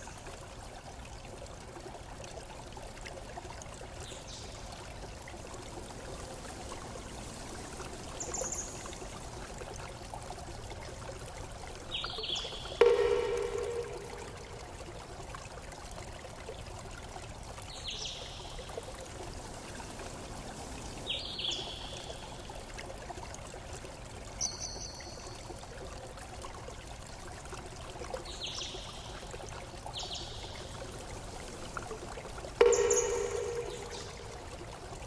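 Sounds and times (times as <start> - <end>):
stream trickling: 0.0 - 35.0
bird chirping: 32.6 - 34.3
low-pitched bird call: 32.6 - 34.4.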